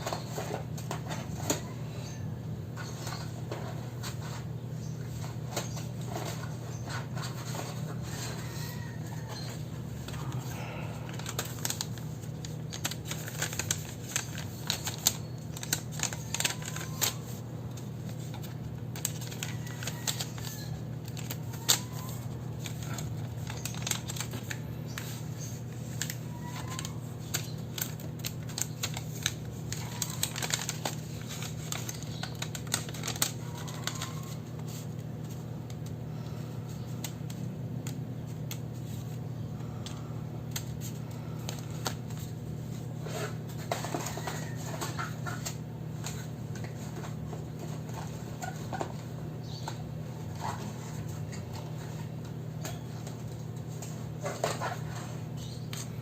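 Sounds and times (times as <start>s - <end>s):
steady low hum: 0.0s - 56.0s
paper rustling and tapping: 11.1s - 36.0s, 39.8s - 56.0s.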